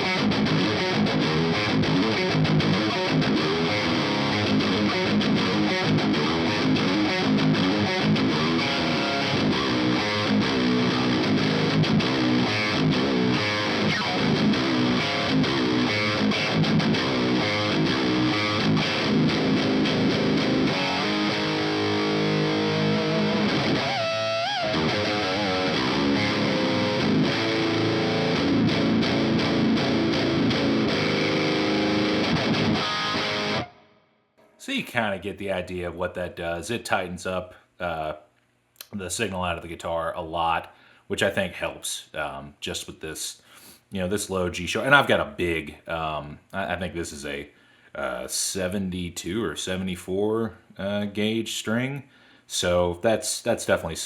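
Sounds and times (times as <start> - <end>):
distorted electric guitar riffing: 0.0 - 33.8.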